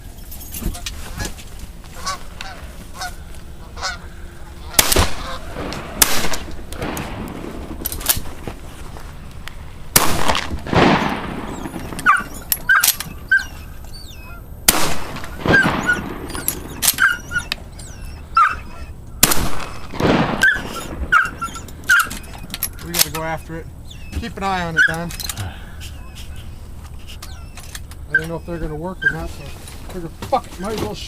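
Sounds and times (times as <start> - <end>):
geese honking: 0.5 - 8.3, 10.0 - 31.0
shotgun blasts with echo: 4.7 - 8.3, 9.9 - 13.1, 14.6 - 17.4, 19.2 - 22.2.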